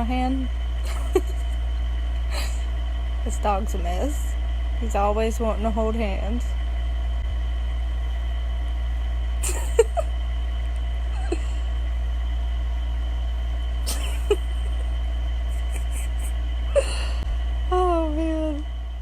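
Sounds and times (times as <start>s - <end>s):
steady low hum: 0.0s - 19.0s
dog whining: 11.1s - 11.6s, 13.9s - 14.8s.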